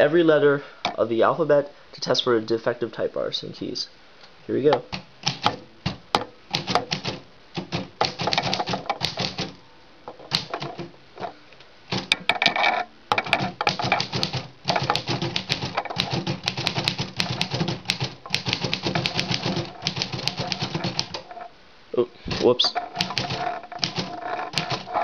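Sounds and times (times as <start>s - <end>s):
typewriter keys clacking: 4.9s - 5.6s, 6.5s - 9.6s, 10.3s - 10.9s, 13.2s - 21.4s, 22.4s - 25.0s.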